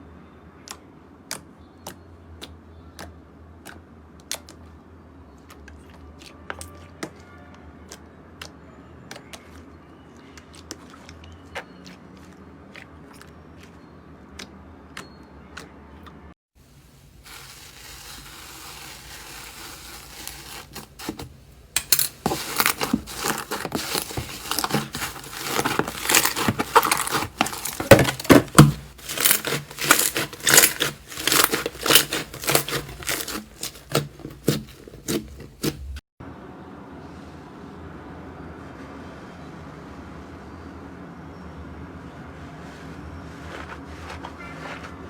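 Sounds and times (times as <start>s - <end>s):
slime crackling and popping: 17.2s - 36.0s.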